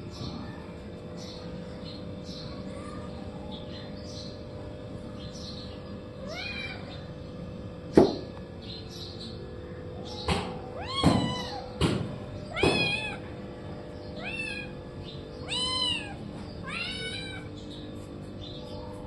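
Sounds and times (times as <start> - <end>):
cat meowing: 6.2 - 7.0, 10.8 - 11.7, 12.5 - 13.2, 14.2 - 14.8, 15.4 - 17.5
sharp knocks: 8.0 - 8.3, 10.3 - 12.9.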